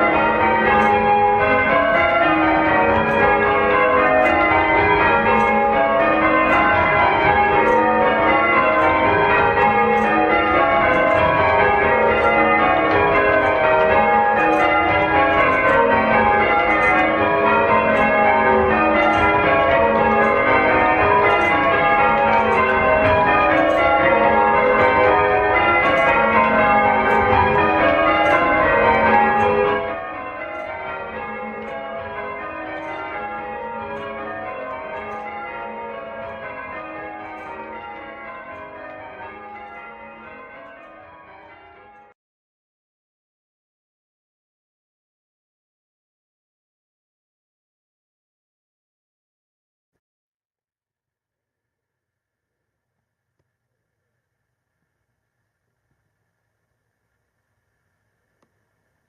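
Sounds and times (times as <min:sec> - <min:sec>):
church bells change-ringing: 0:00.0 - 0:42.2.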